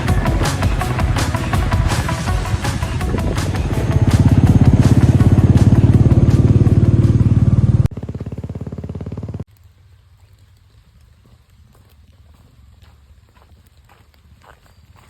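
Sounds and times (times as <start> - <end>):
motorcycle engine running: 0.0 - 9.5.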